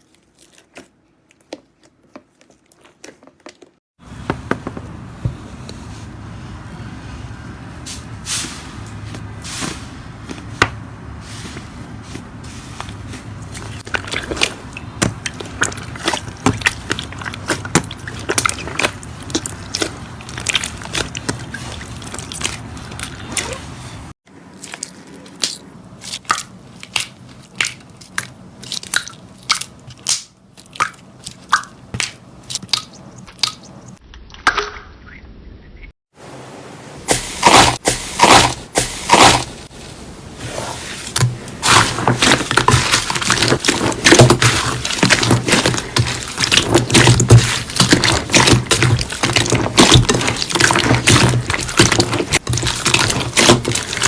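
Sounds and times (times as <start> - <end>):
slime popping and crackling: 37.1 - 39.5, 41.6 - 54.0.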